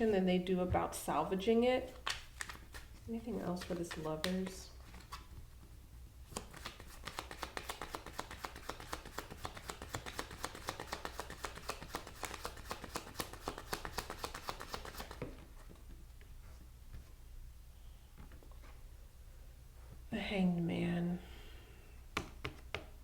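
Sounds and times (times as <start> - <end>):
cards being shuffled: 2.0 - 5.4, 6.3 - 15.5.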